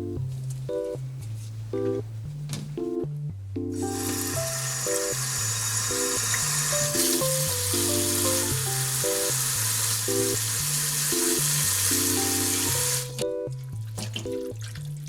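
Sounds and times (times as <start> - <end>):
background music: 0.0 - 15.0
tap water running: 3.8 - 15.0.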